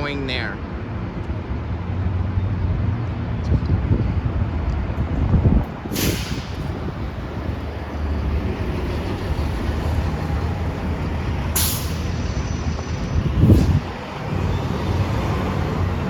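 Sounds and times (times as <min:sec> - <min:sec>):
bus engine running: 0:00.6 - 0:16.0
air brakes hissing: 0:05.8 - 0:07.6, 0:10.2 - 0:16.0.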